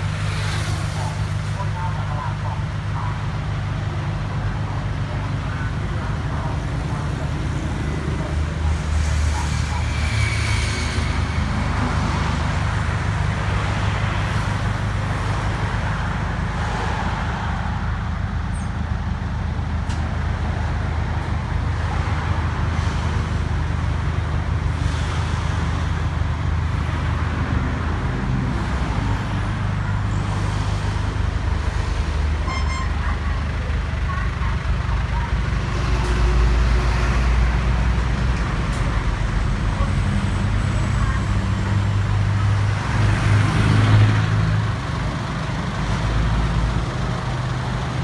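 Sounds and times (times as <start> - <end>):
road traffic noise: 0.0 - 48.0
vehicle engine running: 18.4 - 48.0.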